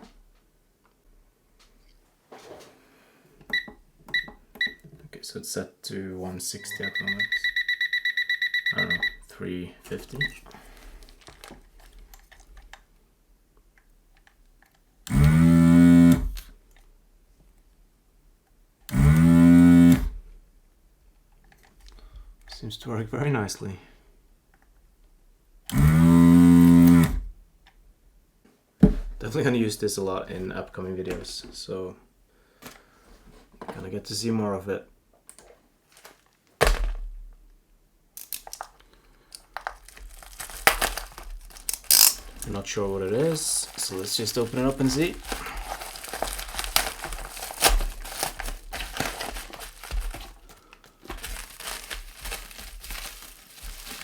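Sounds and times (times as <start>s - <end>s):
packaging crinkling and clicking: 9.9s - 12.8s, 35.3s - 37.0s, 38.2s - 54.0s
vacuum pump buzzing: 15.1s - 16.5s, 18.9s - 20.2s, 25.7s - 27.3s, 40.5s - 53.0s
package thud on workbench: 28.8s - 29.2s, 36.0s - 37.3s, 43.7s - 54.0s.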